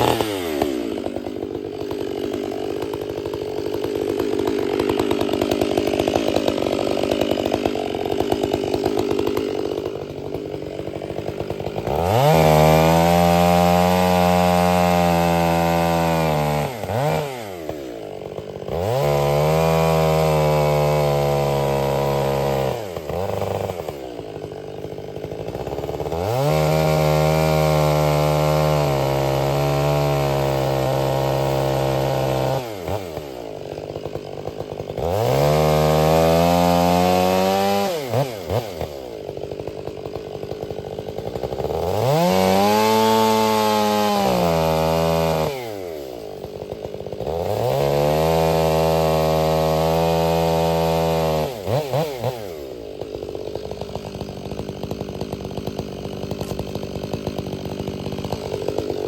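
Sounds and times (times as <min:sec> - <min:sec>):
chainsaw idling and revving: 0:00.0 - 0:59.0.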